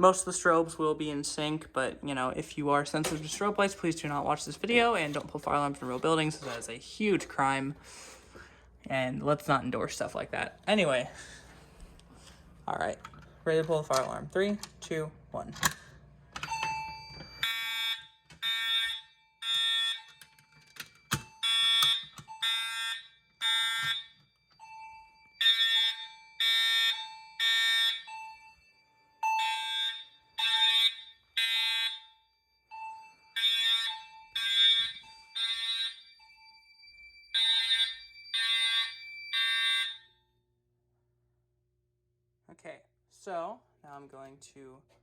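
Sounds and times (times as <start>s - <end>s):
fire alarm horns blasting: 15.6s - 40.4s
alarm chime ringing: 16.4s - 40.2s.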